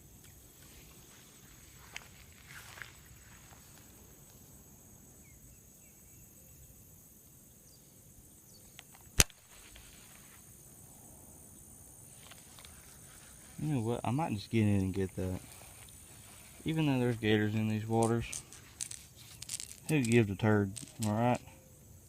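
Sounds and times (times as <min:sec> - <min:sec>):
sharp click: 0:08.7 - 0:09.4
small ticks: 0:15.4 - 0:16.8, 0:18.0 - 0:21.6.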